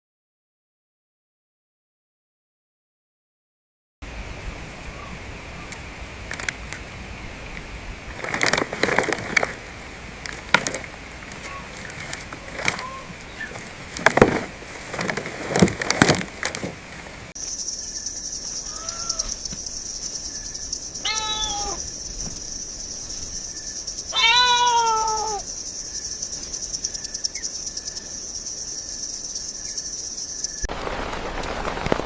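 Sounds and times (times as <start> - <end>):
high-pitched hiss: 17.4 - 30.7
cat meowing: 21.0 - 21.8, 24.1 - 25.4.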